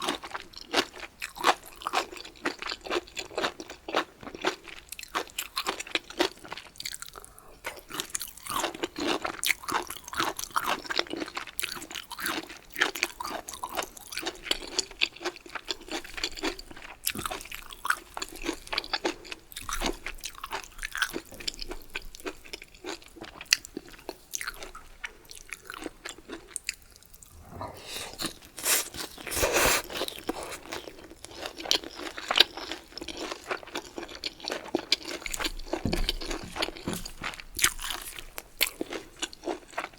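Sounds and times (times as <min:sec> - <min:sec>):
chewing crunchy food: 0:00.0 - 0:39.9
mouth sounds: 0:27.2 - 0:30.8.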